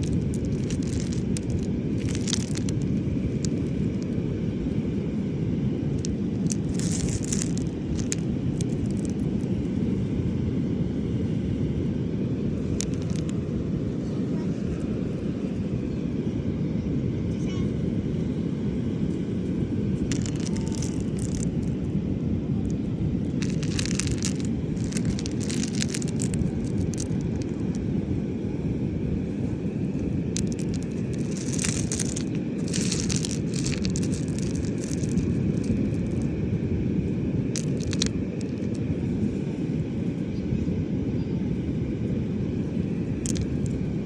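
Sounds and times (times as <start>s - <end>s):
crackling rattling bursts: 0.0s - 3.6s, 6.0s - 9.2s, 20.1s - 21.7s, 23.3s - 27.7s, 29.9s - 36.2s, 37.5s - 38.8s
surf rumbling: 0.0s - 44.0s
wind on microphone: 0.0s - 44.0s.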